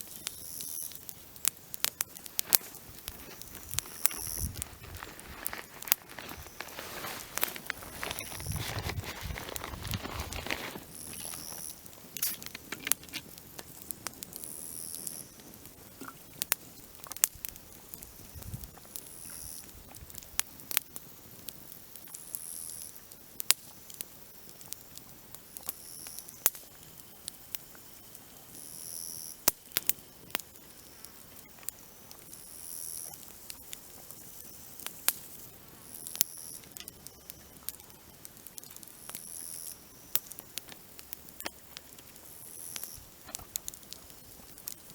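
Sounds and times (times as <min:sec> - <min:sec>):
grasshoppers chirping: 0:00.0 - 0:15.6, 0:32.6 - 0:44.9
sharp clicks and crackles: 0:00.0 - 0:20.9, 0:36.1 - 0:44.9
faint hiss: 0:00.0 - 0:44.9.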